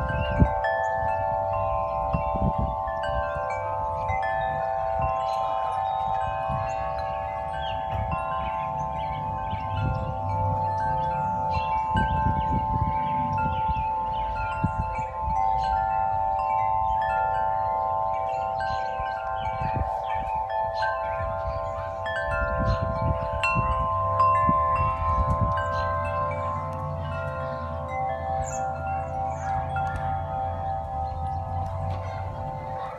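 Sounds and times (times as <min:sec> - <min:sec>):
metal wind chimes ringing: 0:00.0 - 0:32.9
wind rumbling on microphone: 0:00.0 - 0:32.9.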